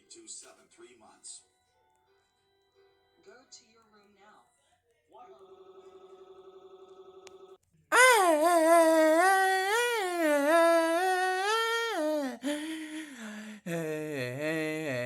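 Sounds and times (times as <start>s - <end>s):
wordless voice wavering pitch: 7.9s - 15.0s.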